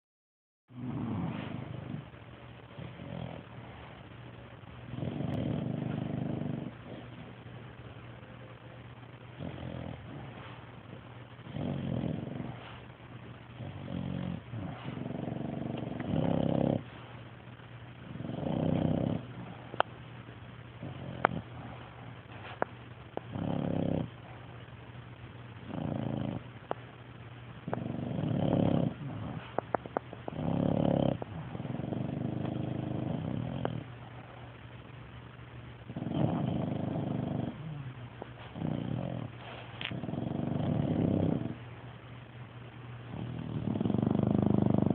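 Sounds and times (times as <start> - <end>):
pet snoring: 0.7 - 2.1, 2.8 - 4.0, 4.8 - 7.4, 9.4 - 17.2, 18.0 - 19.9, 20.8 - 24.5, 25.6 - 26.5, 27.6 - 34.5, 35.9 - 41.6, 43.1 - 44.9.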